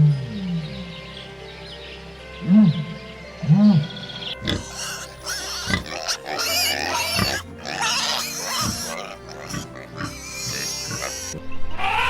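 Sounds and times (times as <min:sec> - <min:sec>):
background music: 0:00.0 - 0:12.0
pigs making high wavering calls: 0:04.4 - 0:12.0.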